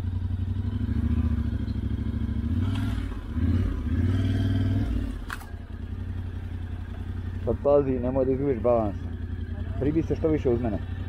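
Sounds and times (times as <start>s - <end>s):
motorcycle engine revving: 0.0s - 11.0s
sharp click: 5.2s - 5.5s.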